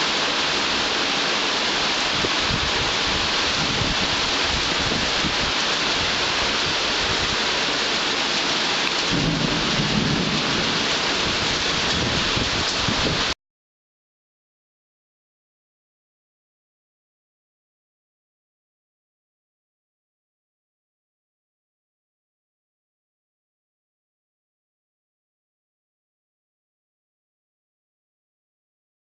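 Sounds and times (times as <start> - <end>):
heavy rain falling: 0.0 - 13.4
low rolling thunder: 9.0 - 13.4.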